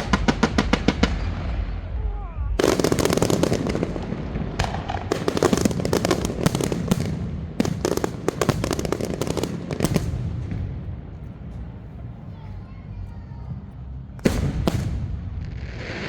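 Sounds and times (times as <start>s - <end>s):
fireworks crackling bangs: 0.0s - 11.8s, 14.2s - 16.0s.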